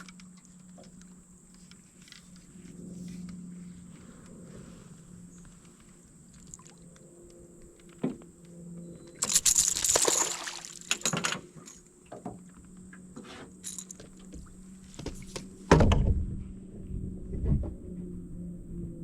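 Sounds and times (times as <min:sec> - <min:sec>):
faint steady hum: 0:00.0 - 0:19.0
water splashing: 0:09.2 - 0:11.1.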